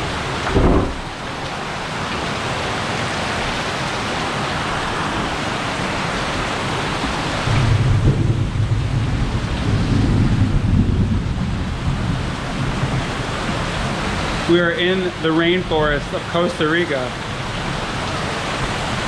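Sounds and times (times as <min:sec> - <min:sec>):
deep thunder rumble: 0:00.0 - 0:01.3, 0:07.4 - 0:14.2
heavy rain pouring: 0:00.0 - 0:19.0.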